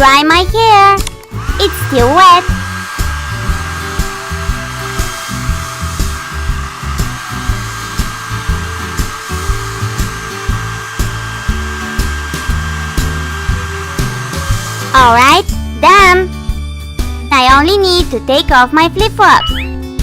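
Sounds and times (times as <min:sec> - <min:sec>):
hair dryer blowing: 0:01.1 - 0:15.6.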